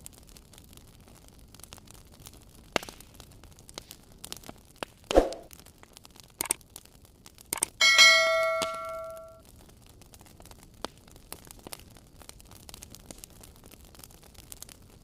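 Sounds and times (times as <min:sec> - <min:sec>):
wood fire crackling: 0:00.0 - 0:15.0
metallic clang ringing: 0:07.7 - 0:09.4.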